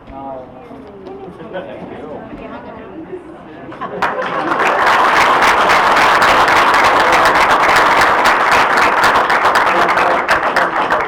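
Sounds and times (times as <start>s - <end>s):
audience applauding: 4.0s - 11.0s.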